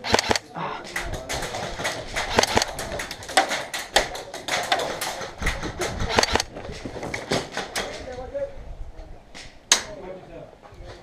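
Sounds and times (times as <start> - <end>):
airsoft guns firing: 0.0 - 6.5.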